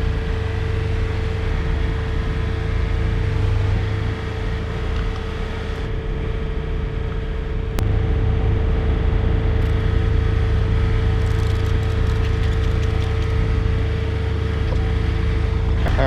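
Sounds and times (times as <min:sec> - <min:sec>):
excavator diesel engine running: 0:07.8 - 0:16.0.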